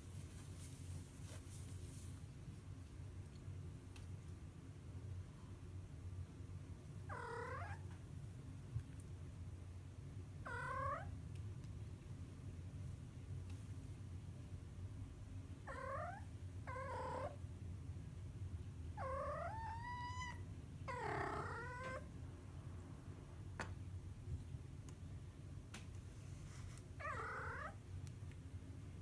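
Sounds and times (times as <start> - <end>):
cat meowing: 7.1 - 7.8, 10.5 - 11.1.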